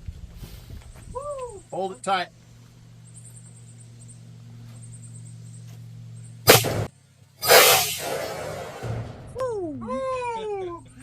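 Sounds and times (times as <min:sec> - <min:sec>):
low steady hum: 0:01.1 - 0:11.0
pistol shot: 0:06.5 - 0:09.2
loud burst of noise: 0:06.5 - 0:09.4.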